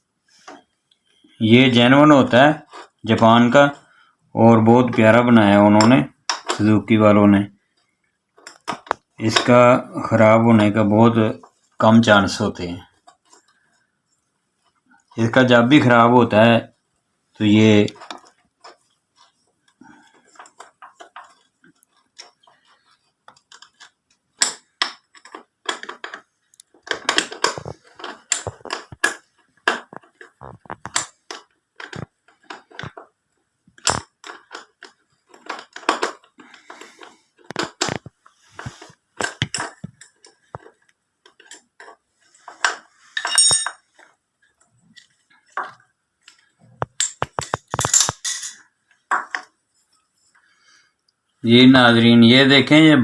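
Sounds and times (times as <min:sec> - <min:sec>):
metal clinks and knocks: 0:39.2 - 0:49.6.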